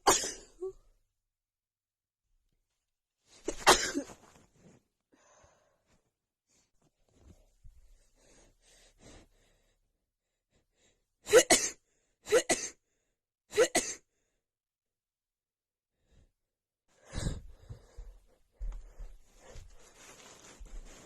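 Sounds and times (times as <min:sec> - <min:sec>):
faint breaths: 0:04.6 - 0:06.0, 0:16.9 - 0:21.0.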